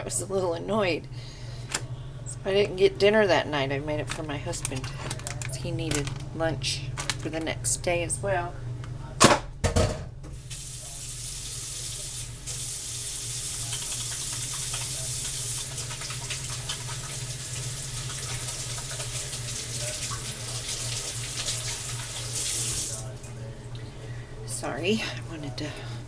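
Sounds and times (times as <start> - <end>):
tap water running into sink: 10.3 - 23.1.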